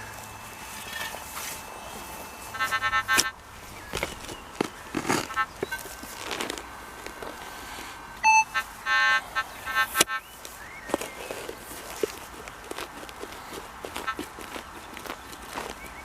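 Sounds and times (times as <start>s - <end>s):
metal detector beeps: 0.0s - 7.3s, 8.2s - 10.4s
spade digging into soil: 3.0s - 7.8s.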